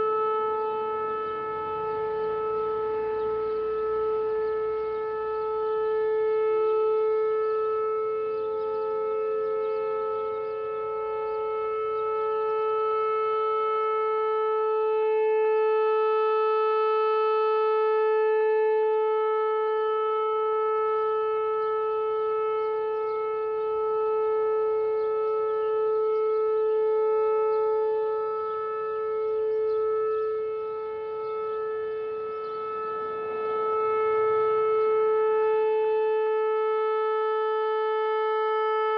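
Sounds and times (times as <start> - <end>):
outdoor warning siren steady tone: 0.0 - 38.9.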